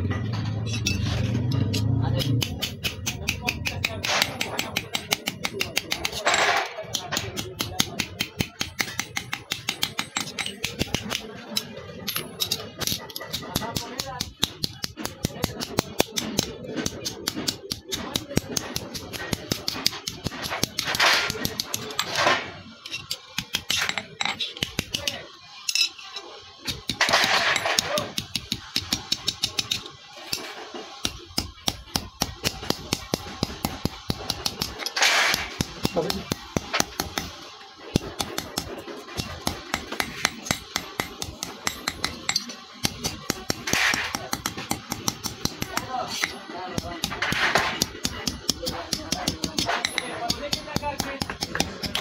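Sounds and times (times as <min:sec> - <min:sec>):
hammer striking steel: 0:00.5 - 0:26.0, 0:26.6 - 0:52.0.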